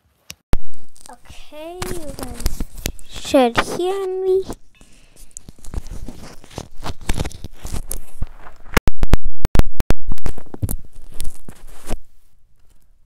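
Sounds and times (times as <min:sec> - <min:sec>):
microphone rubbing and crackling: 0:00.6 - 0:08.8, 0:10.1 - 0:12.2.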